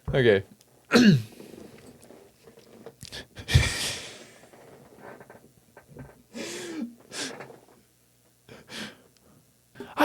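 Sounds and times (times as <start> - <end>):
person breathing out heavily: 6.4 - 7.4.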